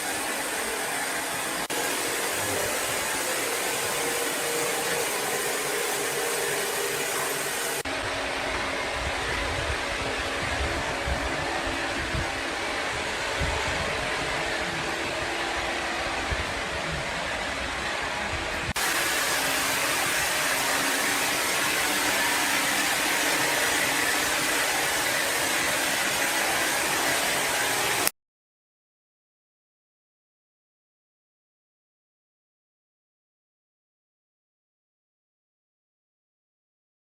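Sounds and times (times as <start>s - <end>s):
loud hissy machine noise: 0.0s - 28.1s
woodworking machine whirring: 0.0s - 28.1s.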